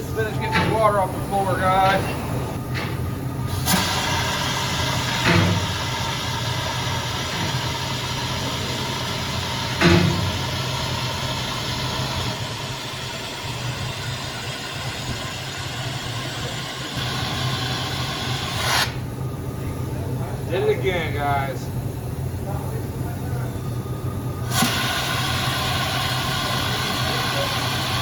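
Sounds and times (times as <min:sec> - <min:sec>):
air suction gun hissing: 0:00.9 - 0:19.0, 0:24.4 - 0:28.0.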